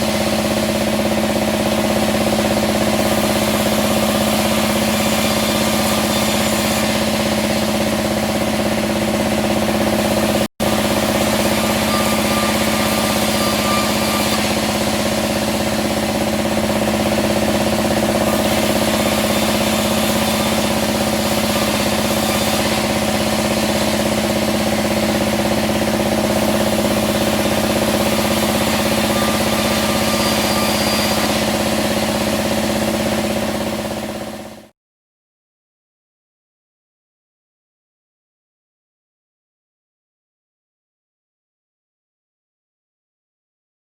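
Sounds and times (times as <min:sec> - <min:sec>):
band saw running: 0:00.0 - 0:34.7.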